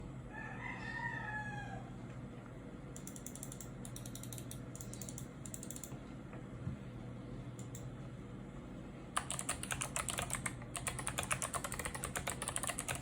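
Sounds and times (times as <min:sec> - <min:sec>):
rooster crowing: 0:00.3 - 0:02.0
mouse buttons clicking rapidly: 0:09.2 - 0:13.0.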